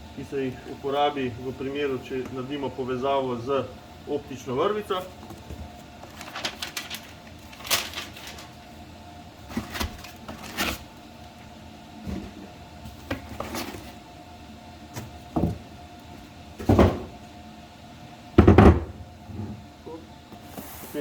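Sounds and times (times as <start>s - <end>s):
packaging knocks and rustles: 5.2s - 8.6s, 9.5s - 10.9s.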